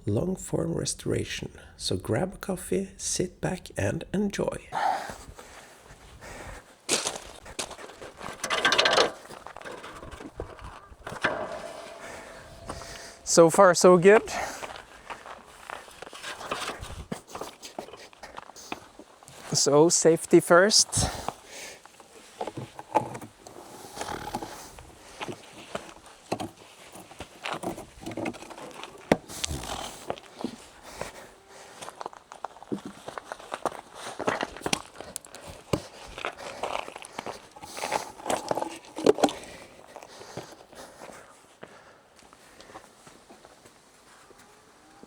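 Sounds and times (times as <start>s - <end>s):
ladder knocking and scraping: 7.2s - 14.6s.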